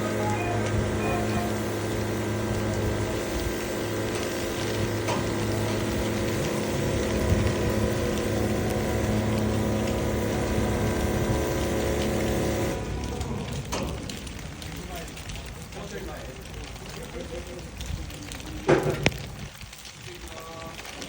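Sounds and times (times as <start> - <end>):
boat lift machinery humming: 0.0 - 14.6.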